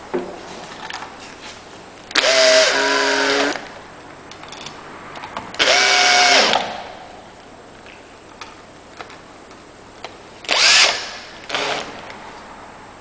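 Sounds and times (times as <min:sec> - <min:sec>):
electric drill motor whine: 0:05.6 - 0:06.6, 0:10.5 - 0:11.9.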